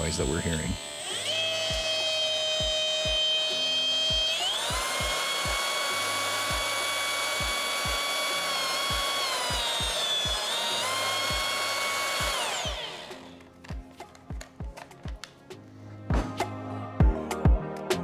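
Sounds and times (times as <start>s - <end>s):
polisher gear whine: 0.0s - 13.4s.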